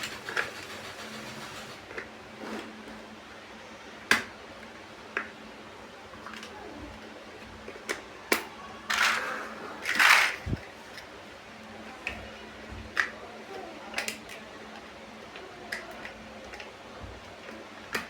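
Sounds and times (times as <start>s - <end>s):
plastic pieces rattling: 8.9s - 10.6s.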